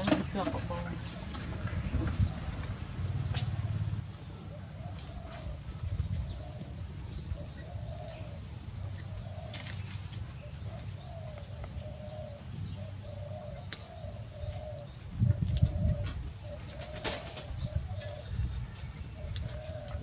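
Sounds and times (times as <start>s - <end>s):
dove cooing: 3.4s - 9.8s, 10.4s - 20.0s.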